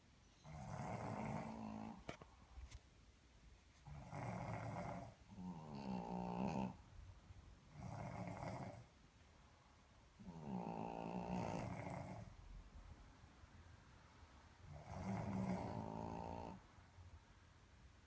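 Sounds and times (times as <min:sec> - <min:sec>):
deep droning snore: 0:00.4 - 0:02.1, 0:03.8 - 0:06.8, 0:07.7 - 0:08.9, 0:10.2 - 0:12.4, 0:14.7 - 0:16.6
rasping snore: 0:00.4 - 0:02.1, 0:03.8 - 0:06.8, 0:07.7 - 0:08.9, 0:10.2 - 0:12.3, 0:14.7 - 0:16.6.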